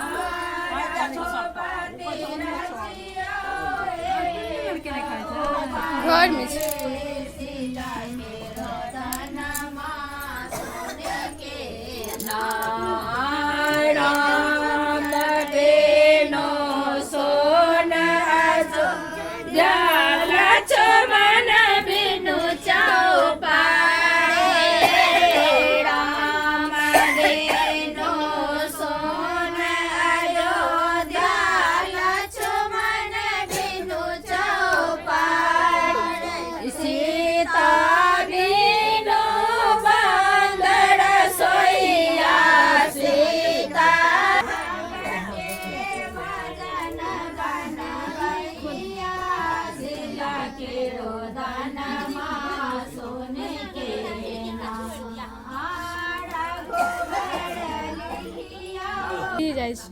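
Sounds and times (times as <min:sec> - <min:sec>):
voices singing a devotional song: 0:00.0 - 0:59.9.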